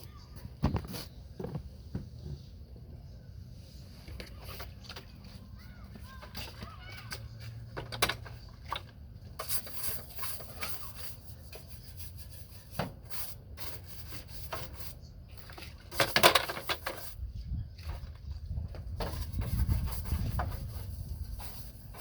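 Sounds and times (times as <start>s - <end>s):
hand scrubbing and scraping: 9.3s - 16.0s, 18.9s - 22.0s.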